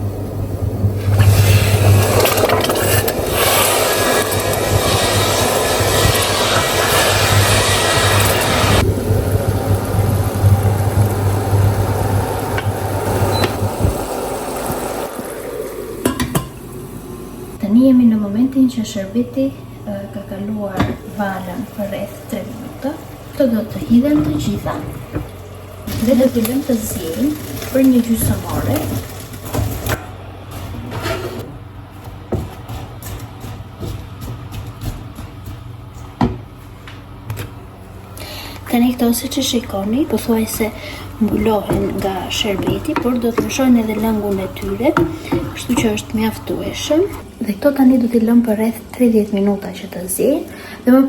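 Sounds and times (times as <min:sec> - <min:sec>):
steady low hum: 0:00.0 - 0:51.0
syrup boiling in a pot: 0:00.4 - 0:17.6
utensils knocking and scraping pot: 0:40.1 - 0:47.2.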